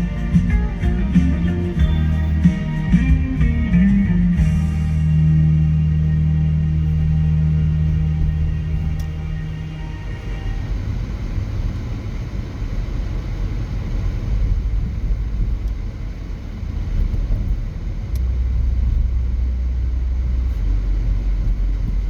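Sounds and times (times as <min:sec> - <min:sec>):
music: 0:00.0 - 0:11.0
low rumble inside moving vehicle: 0:00.0 - 0:22.0.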